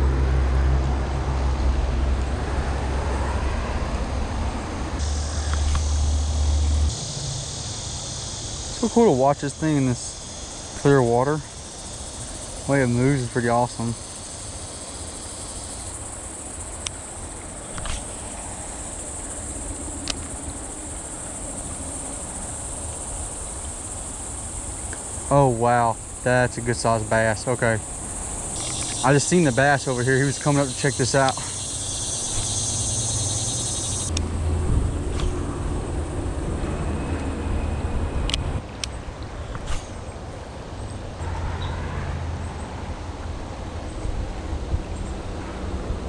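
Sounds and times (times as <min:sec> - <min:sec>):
insects chirping: 0:02.7 - 0:41.8
sharp clicks: 0:28.5 - 0:29.1.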